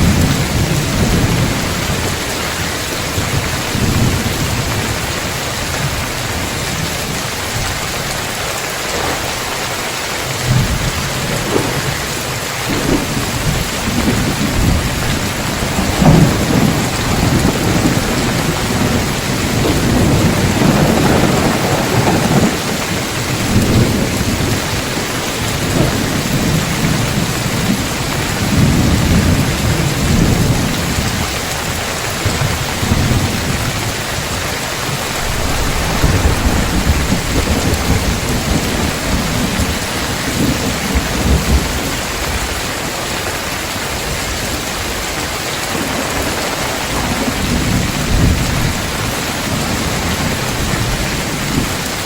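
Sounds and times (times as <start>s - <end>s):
thunder rumbling: 0.0s - 42.4s
heavy rain on a tiled roof: 0.0s - 52.0s.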